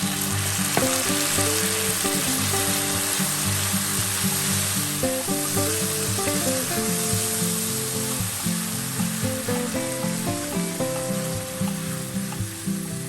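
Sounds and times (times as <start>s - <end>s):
food sizzling in a pan: 0.0s - 13.0s
melodic background music: 0.0s - 13.0s.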